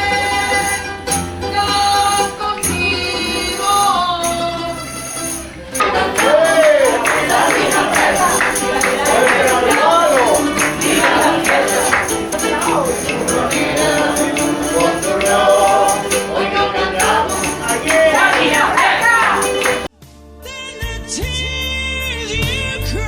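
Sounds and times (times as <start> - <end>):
up-tempo song with singing: 0.0 - 5.0, 5.8 - 23.0
tambourine jingling: 2.1 - 19.9.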